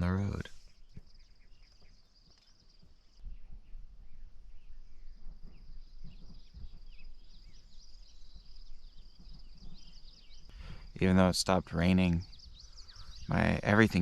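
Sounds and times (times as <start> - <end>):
short bird chirps: 12.1 - 14.0.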